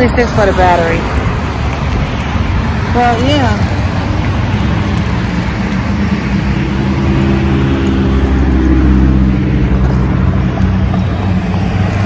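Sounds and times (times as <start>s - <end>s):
vehicle engine humming: 0.0s - 12.0s.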